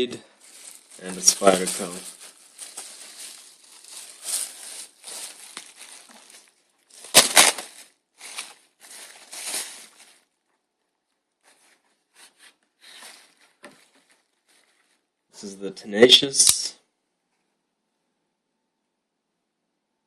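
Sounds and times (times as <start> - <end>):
packaging crinkling and rustling: 0.0 - 10.6, 11.4 - 15.1
loud sharp packaging crackles: 0.3 - 10.4.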